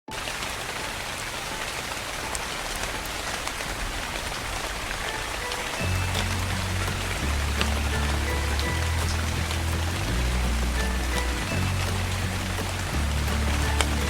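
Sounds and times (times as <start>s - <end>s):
soft rain with ticking drops: 0.1s - 14.0s
low sustained music notes: 5.0s - 14.0s.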